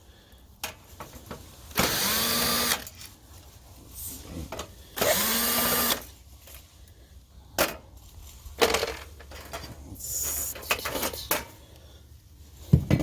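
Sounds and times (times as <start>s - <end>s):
power drill whirring: 1.7s - 2.9s, 5.0s - 6.1s
knocks and clatters of parts: 7.5s - 7.9s, 8.6s - 9.8s, 12.7s - 13.0s.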